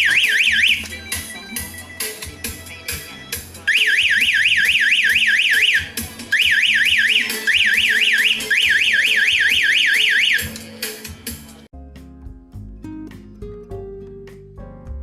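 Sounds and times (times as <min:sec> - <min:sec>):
background music: 0:00.0 - 0:15.0
warbling door alarm buzzer: 0:03.7 - 0:10.5.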